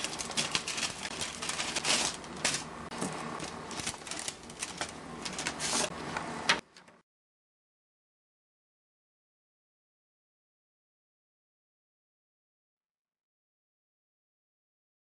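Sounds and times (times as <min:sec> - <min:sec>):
envelope being torn open: 0:00.0 - 0:05.9
paper rustling and crinkling: 0:00.0 - 0:06.0.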